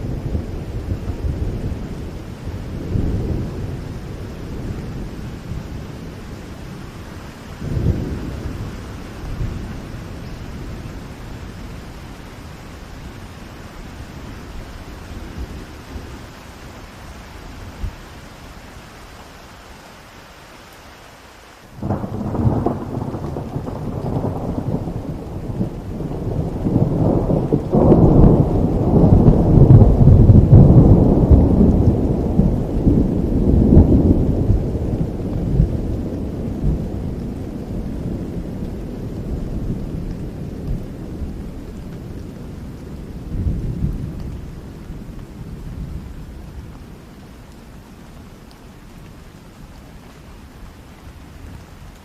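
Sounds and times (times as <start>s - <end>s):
steady rain: 0.0s - 52.0s
thunder crack: 21.8s - 37.2s
thunder rolling: 21.8s - 44.8s.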